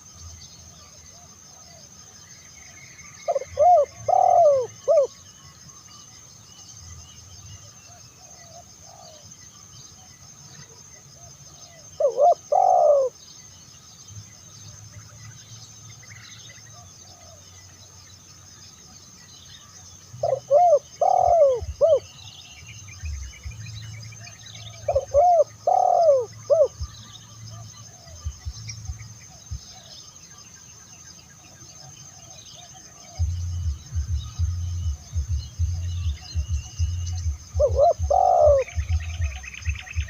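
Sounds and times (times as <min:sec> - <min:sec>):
small birds twittering: 0:00.0 - 0:40.0
dove cooing: 0:03.3 - 0:05.1, 0:07.9 - 0:09.2, 0:11.2 - 0:13.2, 0:20.2 - 0:22.0, 0:24.7 - 0:28.6, 0:32.6 - 0:40.0.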